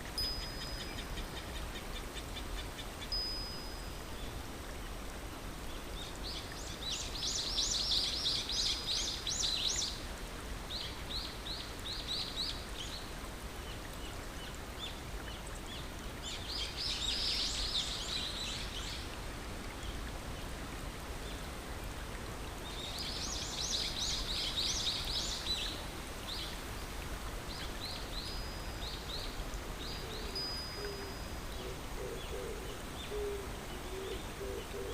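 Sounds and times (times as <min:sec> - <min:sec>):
songbird chirping: 0:00.0 - 0:10.0, 0:22.2 - 0:34.9
running water hiss: 0:00.0 - 0:34.9.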